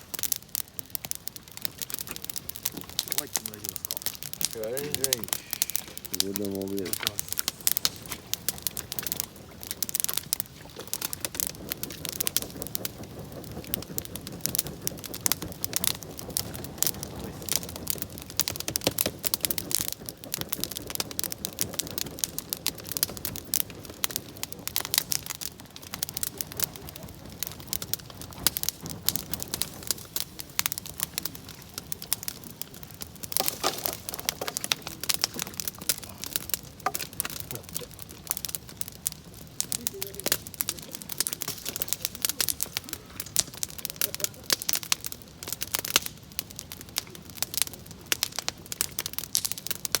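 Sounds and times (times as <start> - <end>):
campfire crackling and popping: 0.0 - 50.0.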